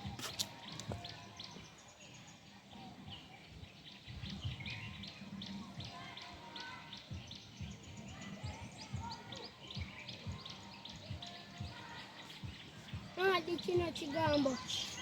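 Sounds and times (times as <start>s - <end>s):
small birds chirping: 0.0s - 15.0s
soft low thumps: 12.4s - 14.7s.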